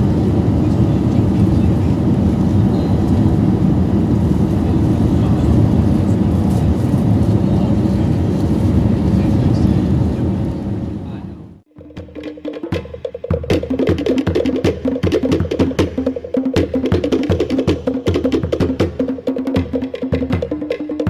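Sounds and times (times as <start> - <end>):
jet cabin engine noise: 0.0 - 11.7.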